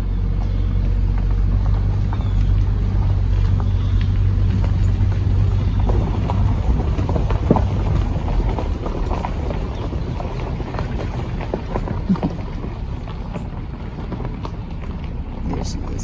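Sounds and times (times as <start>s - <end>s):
car rumble inside cabin: 0.0s - 16.0s.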